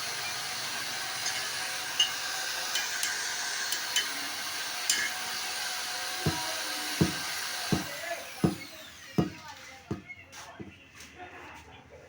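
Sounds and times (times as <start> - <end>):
small power tool running: 0.0 - 10.0
dull knocks: 6.3 - 8.6.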